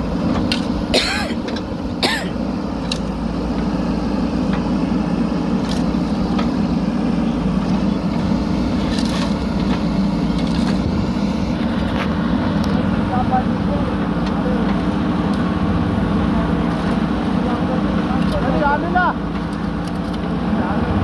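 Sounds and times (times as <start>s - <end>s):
diesel engine running: 0.0s - 21.0s.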